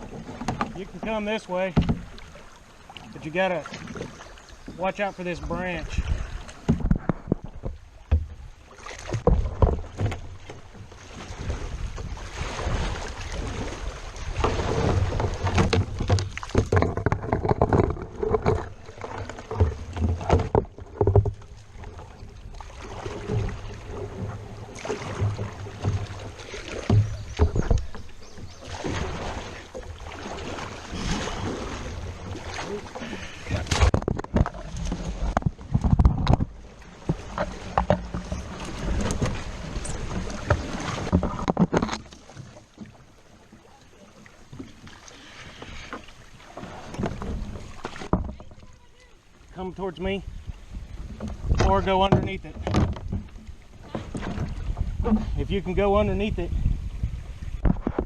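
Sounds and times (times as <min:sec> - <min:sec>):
moving water: 0:00.0 - 0:58.0
paddle splashing: 0:00.0 - 0:58.0
knocks against kayak hull: 0:01.7 - 0:02.2, 0:06.6 - 0:08.4, 0:09.0 - 0:10.7, 0:14.4 - 0:21.6, 0:23.2 - 0:29.1, 0:33.6 - 0:39.4, 0:51.1 - 0:55.4, 0:57.6 - 0:58.0.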